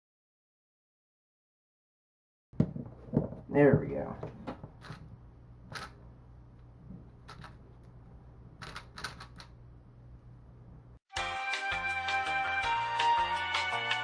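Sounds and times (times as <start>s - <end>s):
plastic puzzle cube clicks: 8.6s - 9.5s
music: 11.1s - 14.0s.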